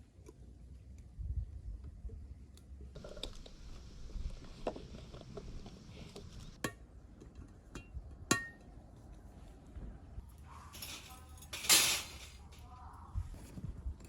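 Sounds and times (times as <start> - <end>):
ringing clinks: 10.7 - 12.6
tableware clattering: 10.7 - 12.7.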